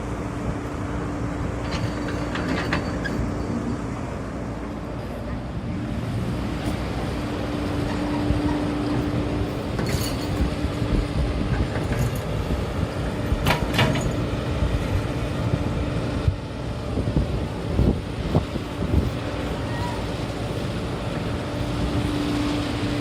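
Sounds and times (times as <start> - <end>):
heavy machinery rumbling: 0.0 - 23.0.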